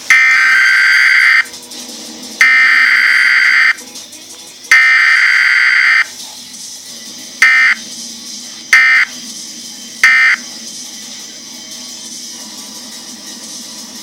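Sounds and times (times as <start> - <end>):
digital data tone bursts: 0.0 - 1.5, 2.4 - 3.8, 4.7 - 6.1, 7.4 - 7.8, 8.8 - 9.1, 10.0 - 10.4.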